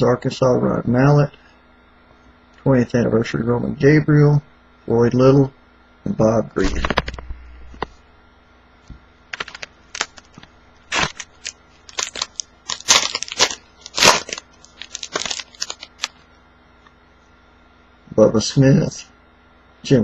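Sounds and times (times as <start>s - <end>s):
cards being handled: 9.3s - 16.2s
wrapper crinkling and tearing: 9.3s - 16.2s.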